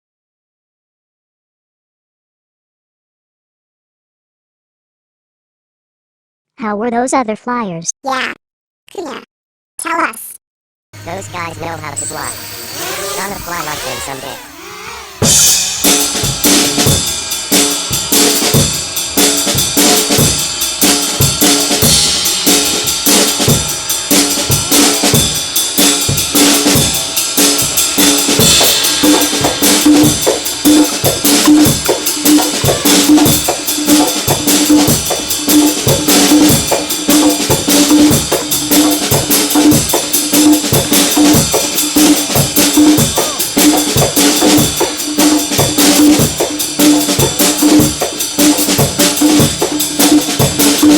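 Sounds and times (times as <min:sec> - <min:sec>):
repeating bass note: 0:11.0 - 0:34.5, 0:43.0 - 0:43.7
jazz music with drum beat: 0:14.6 - 0:50.9.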